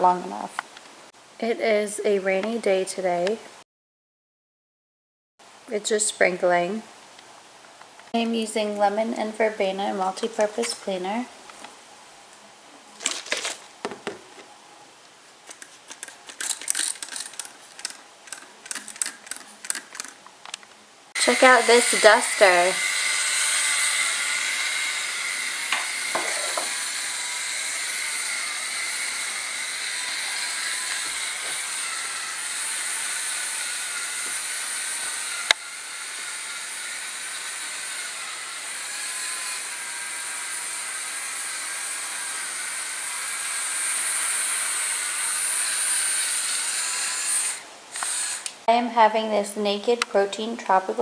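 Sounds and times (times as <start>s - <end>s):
vacuum cleaner motor running: 21.2s - 46.3s.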